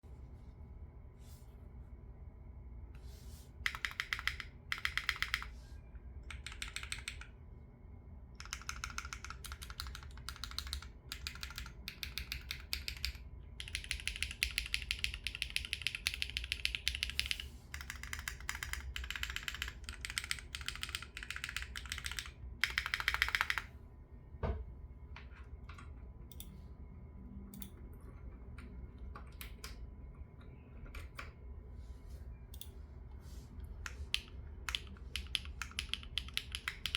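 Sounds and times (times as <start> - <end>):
mechanical keyboard typing: 3.6 - 5.5, 6.2 - 7.4, 8.4 - 23.7, 33.8 - 36.9.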